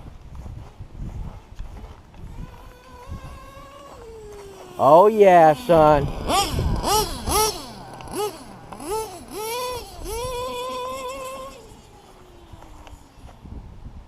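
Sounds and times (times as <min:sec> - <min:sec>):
nitro engine revving: 0:02.2 - 0:13.2.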